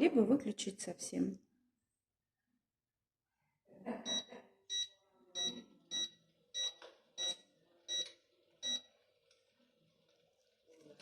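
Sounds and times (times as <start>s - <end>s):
short high-pitched beeps: 4.1s - 8.8s.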